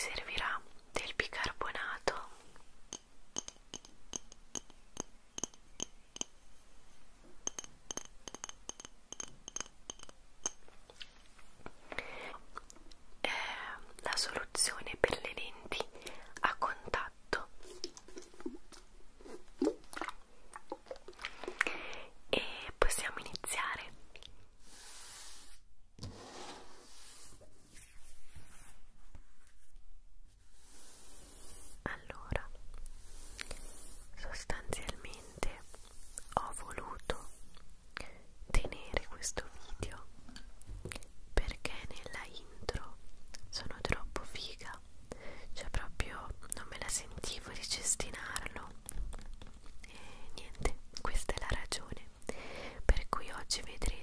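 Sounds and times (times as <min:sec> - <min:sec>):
tapping on glass: 0:02.9 - 0:06.4, 0:07.4 - 0:10.6
hands rubbing and rustling: 0:24.6 - 0:37.8.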